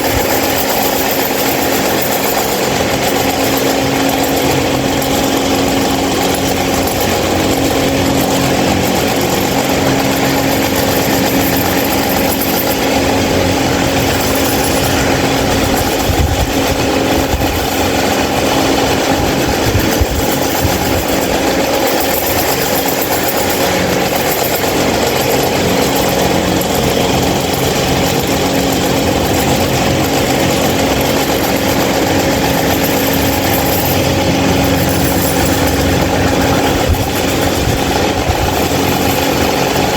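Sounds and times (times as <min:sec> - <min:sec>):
fan motor hum: 0:00.0 - 0:39.9
stand fan air rush: 0:00.0 - 0:39.9.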